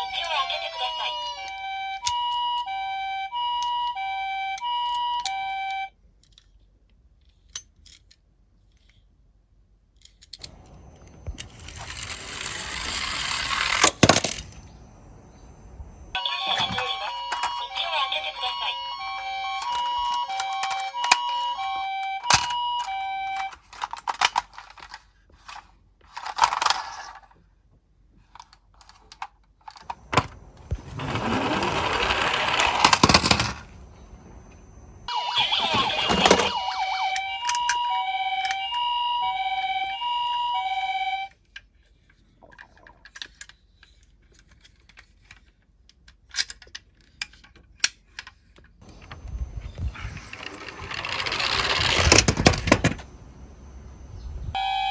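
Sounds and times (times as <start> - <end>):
toy electronic siren: 0.0 - 6.0, 10.4 - 14.4, 16.1 - 24.3, 30.1 - 41.4, 49.6 - 52.8, 54.5 - 54.9
toy cars rolling rattle: 10.0 - 14.6, 16.6 - 27.4, 28.3 - 33.8, 35.6 - 38.7, 49.7 - 53.1
plastic clicks and clatter: 22.2 - 27.3.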